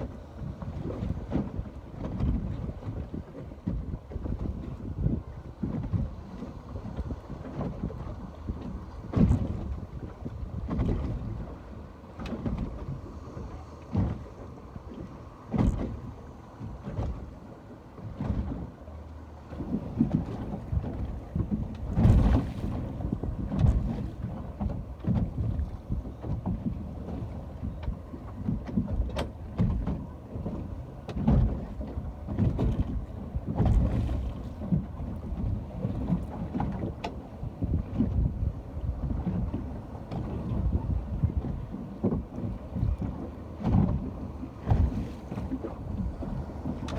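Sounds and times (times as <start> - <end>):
wind on microphone: 0.0 - 17.4, 19.5 - 46.9
ocean water splashing: 0.0 - 46.9.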